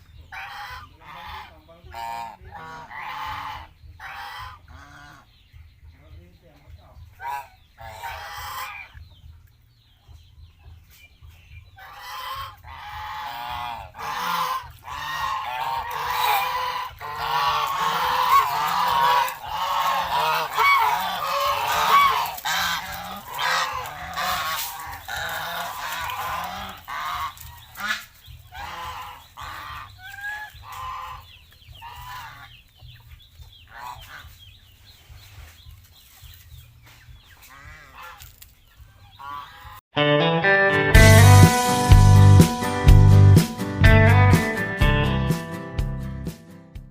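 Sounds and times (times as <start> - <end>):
geese honking: 0.3 - 5.3, 7.1 - 9.0, 11.8 - 34.4, 37.4 - 38.4, 39.1 - 39.8, 40.9 - 46.0.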